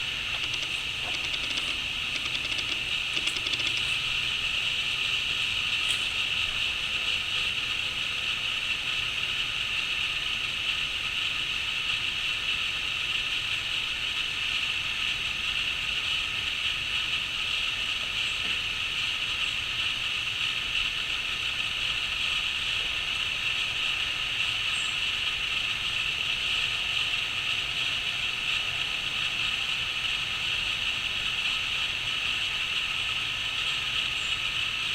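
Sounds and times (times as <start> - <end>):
faint high chirps: 0.0 - 4.2
crickets trilling: 0.0 - 8.9.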